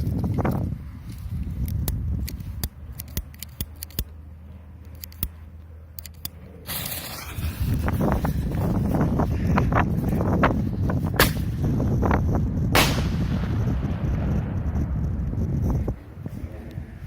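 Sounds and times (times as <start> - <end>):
sharp clicks: 0.0 - 4.2, 4.8 - 7.6
low rumble: 6.5 - 17.0
firework fuse hissing: 6.7 - 9.1.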